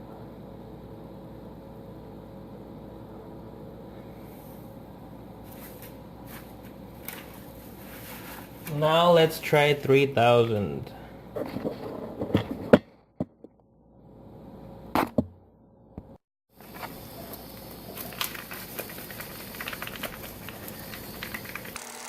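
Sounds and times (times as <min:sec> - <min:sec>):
handling knocks and clicks: 0:16.0 - 0:21.8.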